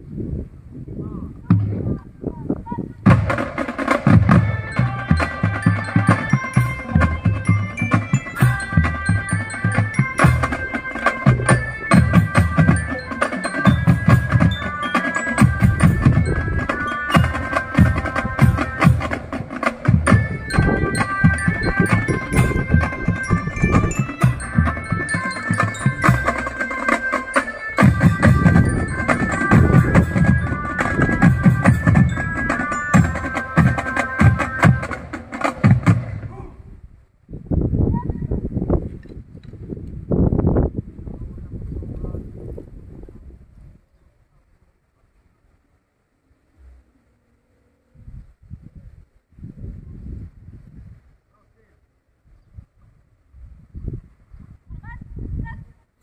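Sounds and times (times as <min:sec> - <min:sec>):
marching drums beating: 0:03.0 - 0:36.5
mallet bells melody: 0:03.3 - 0:36.1.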